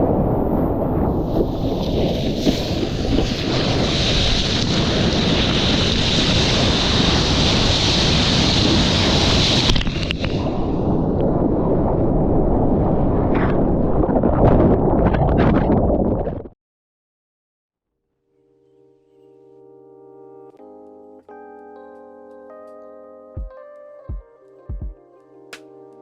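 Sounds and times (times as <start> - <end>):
ocean surf rushing: 0.0 - 14.0
wind buffeting microphone: 0.0 - 16.6
hiss of breaking water: 1.1 - 10.7
low rumble: 10.4 - 16.6.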